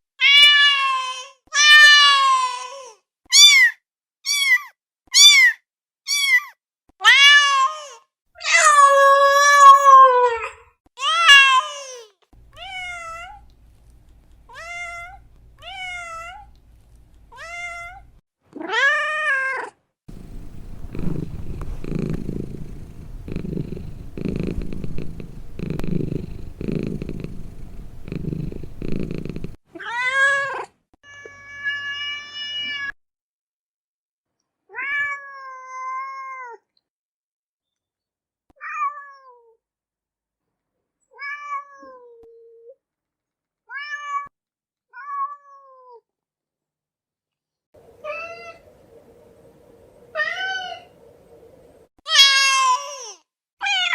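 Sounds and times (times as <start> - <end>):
cat purring: 20.1 - 29.6
cats meowing: 20.1 - 29.6.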